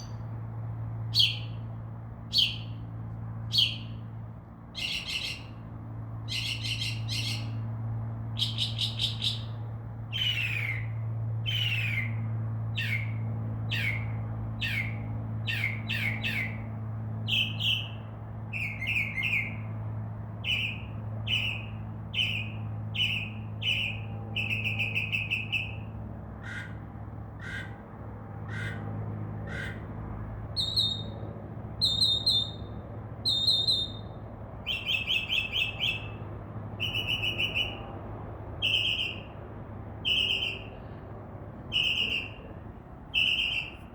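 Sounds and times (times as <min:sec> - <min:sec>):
mockingbird singing: 0:00.0 - 0:00.2, 0:01.1 - 0:01.6, 0:02.3 - 0:02.8, 0:03.5 - 0:04.0, 0:04.8 - 0:05.6, 0:06.2 - 0:07.6, 0:08.3 - 0:19.6, 0:20.4 - 0:25.8, 0:30.6 - 0:31.2, 0:31.8 - 0:36.2, 0:38.6 - 0:39.3, 0:40.0 - 0:40.7, 0:41.7 - 0:42.4, 0:43.1 - 0:43.8.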